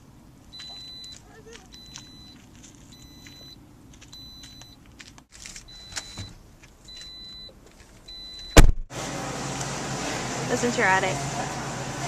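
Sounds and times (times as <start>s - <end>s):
car warning chime beeping: 0.5s - 4.8s, 5.7s - 8.7s.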